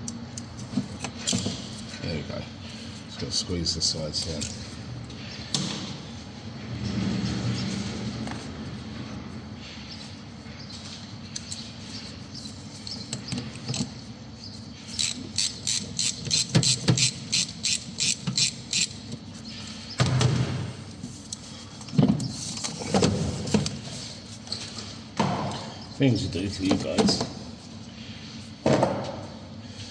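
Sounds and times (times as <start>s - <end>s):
ratchet clicks: 14.9s - 19.0s.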